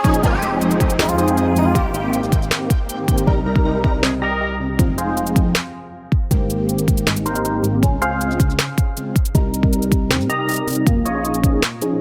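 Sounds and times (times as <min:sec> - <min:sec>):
deep kick drum: 0:00.0 - 0:04.1, 0:04.8 - 0:07.2, 0:07.8 - 0:10.2, 0:10.9 - 0:11.6
sharp percussion: 0:00.0 - 0:04.2, 0:04.8 - 0:12.0
held synth notes: 0:00.0 - 0:11.6.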